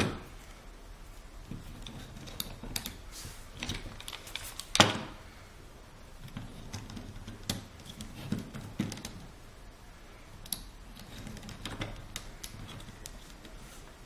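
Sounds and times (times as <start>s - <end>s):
small plastic parts clicking: 1.5s - 3.0s, 3.6s - 5.1s, 6.2s - 9.4s, 10.4s - 13.6s.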